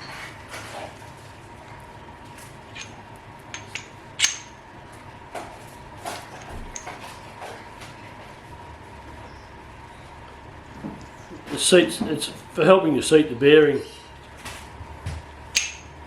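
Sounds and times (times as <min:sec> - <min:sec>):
small metal parts clinking: 0:02.7 - 0:04.6.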